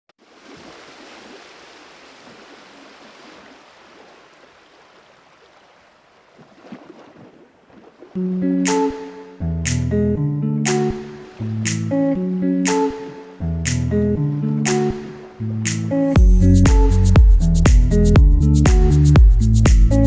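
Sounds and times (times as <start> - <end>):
plucked string music: 8.2 - 20.0.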